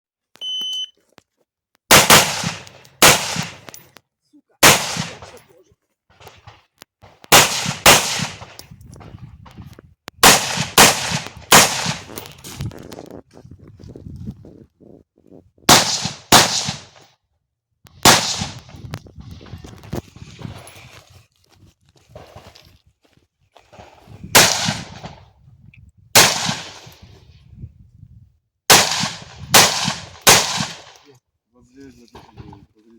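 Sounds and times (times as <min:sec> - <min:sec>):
shot timer start beep: 0:00.4 - 0:01.0
rifle gunshots echoing: 0:01.9 - 0:03.8, 0:04.6 - 0:05.5, 0:07.2 - 0:08.6, 0:10.2 - 0:12.2, 0:15.7 - 0:17.0, 0:18.0 - 0:18.7, 0:24.3 - 0:25.2, 0:26.2 - 0:27.1, 0:28.7 - 0:31.0.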